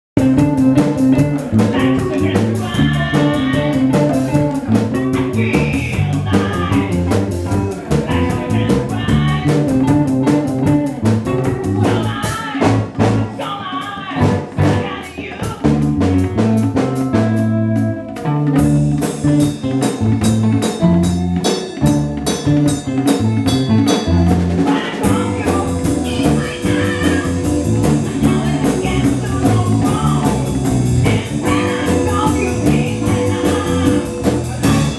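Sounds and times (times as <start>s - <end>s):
person singing: 0.2s - 11.0s, 11.6s - 15.9s, 23.9s - 34.9s
live blues-rock band playing: 0.2s - 34.9s.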